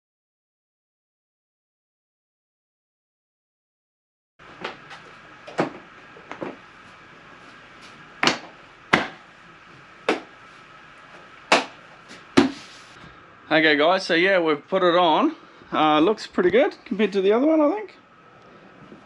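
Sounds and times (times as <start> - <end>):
faint steady hum: 4.4 - 19.0.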